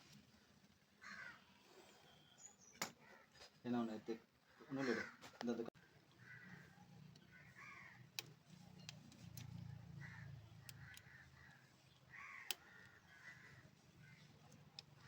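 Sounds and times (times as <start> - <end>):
harsh bird calls: 9.9 - 14.5.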